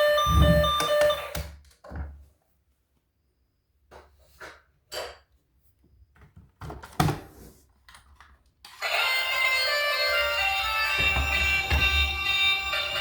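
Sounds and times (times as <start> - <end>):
busy music: 8.8 - 13.0.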